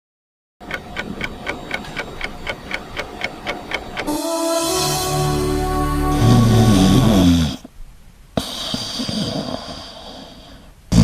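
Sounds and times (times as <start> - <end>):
person snoring: 4.1 - 7.7.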